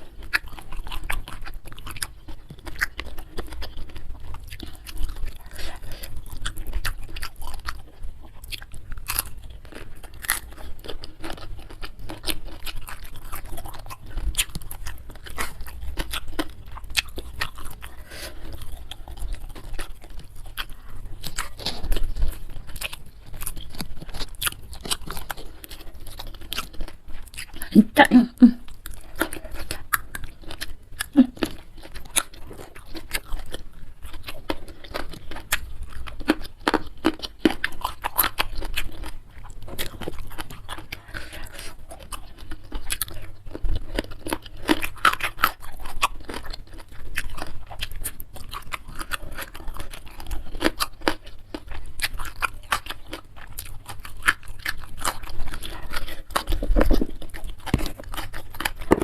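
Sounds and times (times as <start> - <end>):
person chewing crunchy food: 0.0 - 59.0
mouth sounds: 27.6 - 28.7, 31.0 - 31.5.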